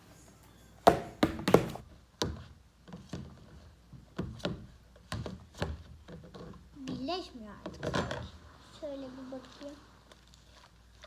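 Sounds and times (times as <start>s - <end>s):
slime stirred in a bowl knocking: 1.5s - 8.4s.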